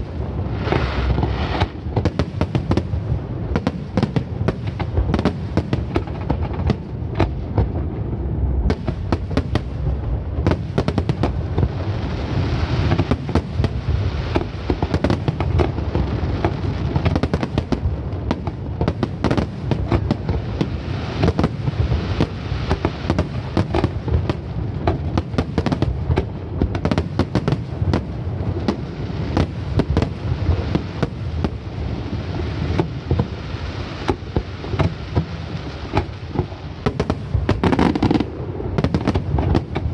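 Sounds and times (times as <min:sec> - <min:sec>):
deep rumble: 0:00.0 - 0:02.1, 0:05.8 - 0:21.1.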